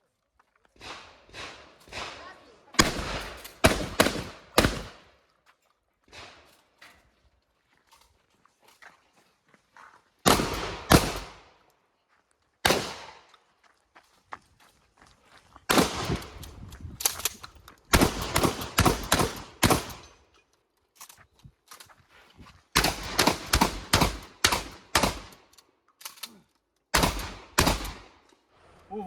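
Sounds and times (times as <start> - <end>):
shotgun shots echoing: 0.8 - 5.1, 10.3 - 11.5, 12.6 - 13.3, 15.7 - 16.4, 17.9 - 20.1, 22.8 - 25.4, 26.9 - 28.2.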